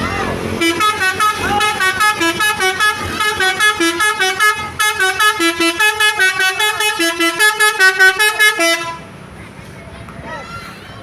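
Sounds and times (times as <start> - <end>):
horn playing fast melody: 0.6 - 9.0.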